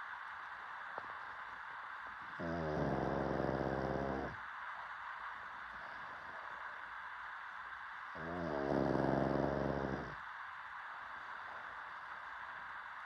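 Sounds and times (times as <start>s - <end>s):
dog snoring: 2.2s - 4.4s, 8.1s - 10.2s.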